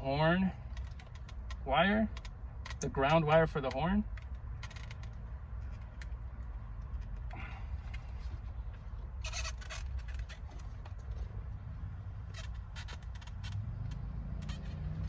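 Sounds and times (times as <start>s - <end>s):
light clicks of handled parts: 0.6s - 11.4s.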